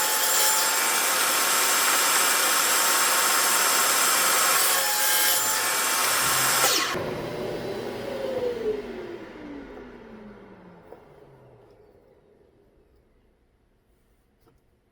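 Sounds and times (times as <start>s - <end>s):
table saw cutting wood: 0.0s - 11.8s
saw blade whine spinning down: 5.4s - 13.0s.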